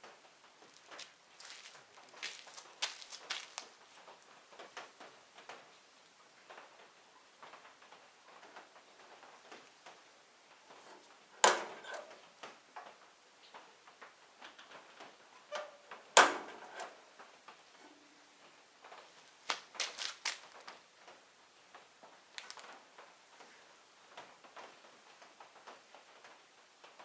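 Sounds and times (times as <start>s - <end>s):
small clicks and knocks: 6.5s - 27.0s.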